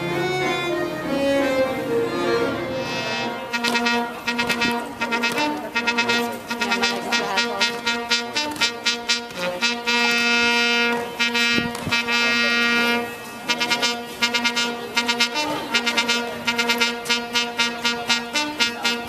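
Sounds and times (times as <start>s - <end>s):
steady held note: 0.0s - 6.0s
instrumental music: 0.0s - 19.0s.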